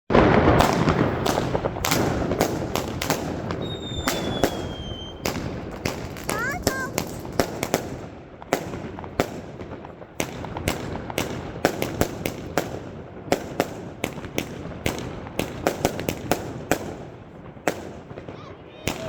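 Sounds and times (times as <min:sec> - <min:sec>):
firework bangs: 0:00.1 - 0:19.0.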